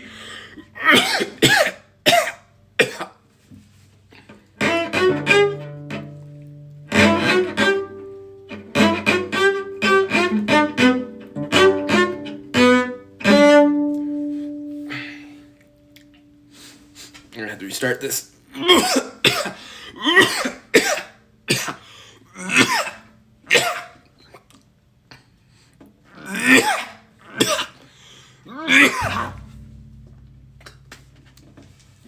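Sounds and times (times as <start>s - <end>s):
person coughing: 0.8s - 3.2s, 18.6s - 21.8s, 22.4s - 24.0s, 26.3s - 27.8s, 28.7s - 29.5s
cello bowed notes: 4.6s - 16.9s, 28.7s - 31.8s.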